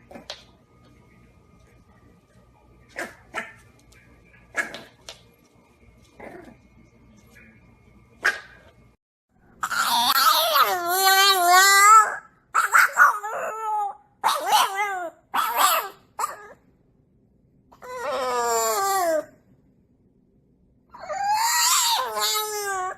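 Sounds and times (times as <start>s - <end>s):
dog whining and howling: 9.6s - 16.6s, 17.7s - 19.4s, 20.9s - 22.9s.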